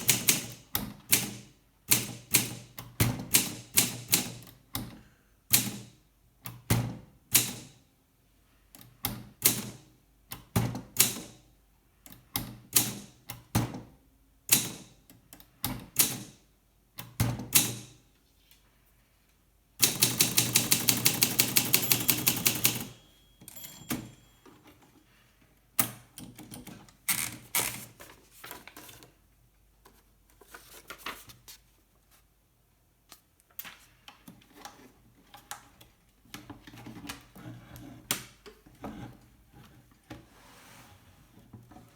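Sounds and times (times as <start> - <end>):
typewriter key strikes: 19.8 - 24.2.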